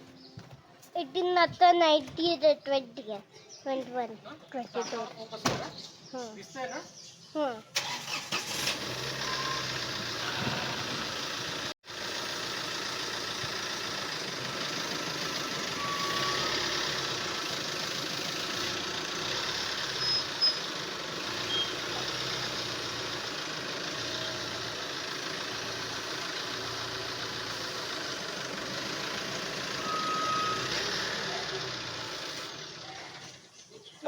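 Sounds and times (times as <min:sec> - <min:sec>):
vehicle engine running: 0:07.8 - 0:33.5.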